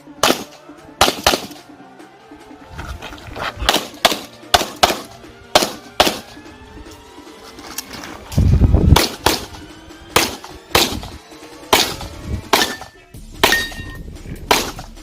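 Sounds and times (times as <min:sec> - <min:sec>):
handgun shots: 0:00.2 - 0:01.6, 0:03.6 - 0:06.4, 0:08.9 - 0:09.6, 0:10.2 - 0:15.0.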